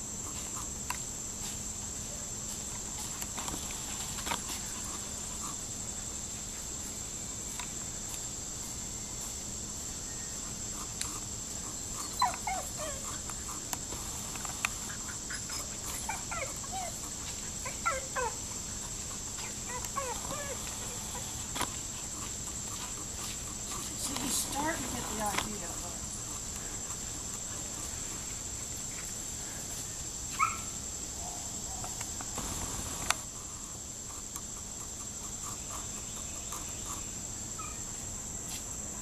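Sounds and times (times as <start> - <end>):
puppy whining: 11.0 - 13.6, 14.8 - 26.3, 30.3 - 31.9, 35.5 - 38.0.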